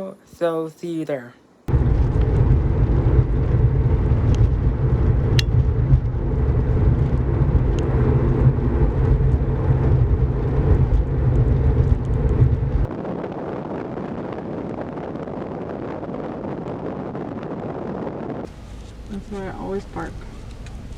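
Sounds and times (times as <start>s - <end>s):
car interior rumble: 1.7s - 12.9s, 18.5s - 20.9s
faint hiss: 18.5s - 20.9s.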